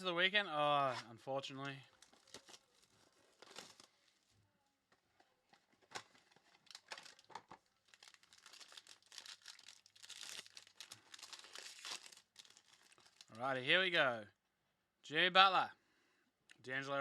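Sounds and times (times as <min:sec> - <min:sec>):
wrappers crinkling and tearing: 0:01.9 - 0:04.3, 0:06.0 - 0:13.4.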